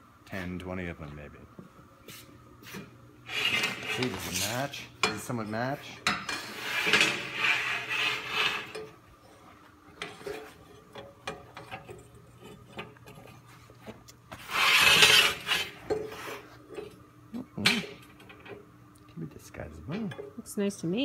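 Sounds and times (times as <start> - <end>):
steel pieces scraping: 3.3 - 9.0, 14.4 - 16.9.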